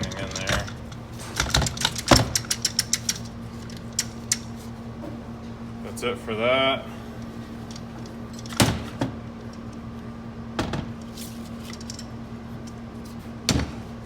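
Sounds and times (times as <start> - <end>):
metal parts knocking and clunking: 0.0 - 4.5, 10.6 - 12.2
steady low hum: 0.0 - 14.0.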